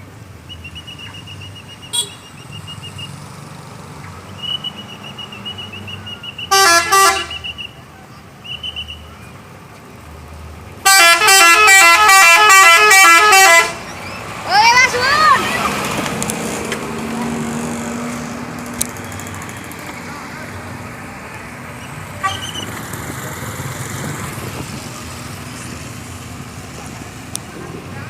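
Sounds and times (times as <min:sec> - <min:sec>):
bus musical horn: 0:01.9 - 0:02.2, 0:06.5 - 0:07.5, 0:10.8 - 0:13.9, 0:22.2 - 0:22.6.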